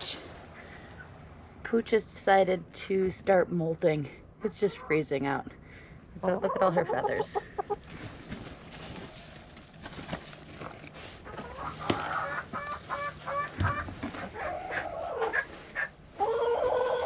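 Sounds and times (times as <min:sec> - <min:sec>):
hens clucking: 0:04.4 - 0:05.5, 0:06.2 - 0:09.6, 0:10.9 - 0:17.0.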